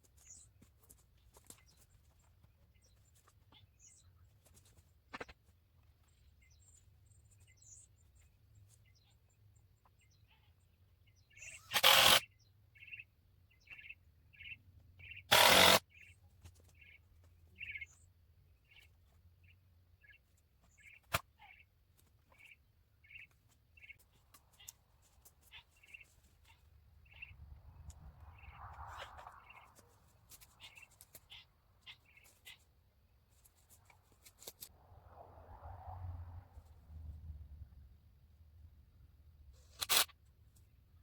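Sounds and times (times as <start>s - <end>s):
bird chirping: 6.0s - 24.8s, 25.4s - 32.7s.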